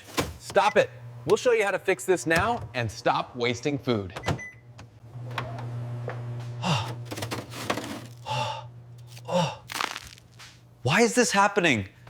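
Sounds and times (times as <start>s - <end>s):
steady low hum: 5.0s - 10.9s
person gasping and sighing: 6.6s - 7.0s, 8.2s - 9.7s.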